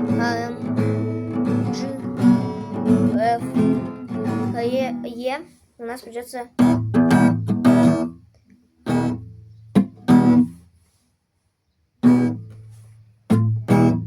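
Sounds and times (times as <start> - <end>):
acoustic guitar strummed chords: 0.0 - 5.2, 6.6 - 8.2, 8.8 - 10.6, 12.0 - 14.0.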